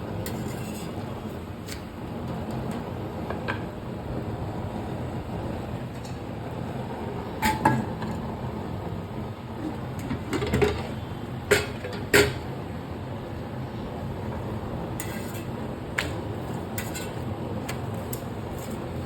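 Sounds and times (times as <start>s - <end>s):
utensils and cookware clinking: 0.2s - 1.0s, 10.0s - 12.5s, 15.0s - 19.0s.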